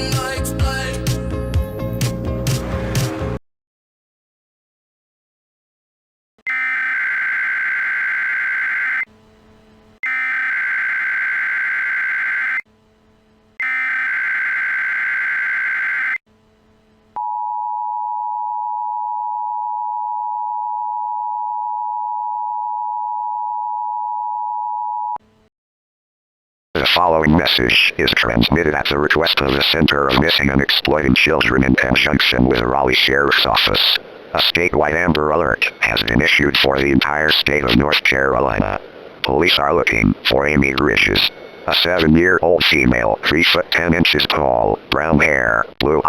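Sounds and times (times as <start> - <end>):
two-tone attention signal: 13.6 - 14.0
alert data bursts: 13.6 - 16.2, 35.3 - 37.0, 39.5 - 43.2.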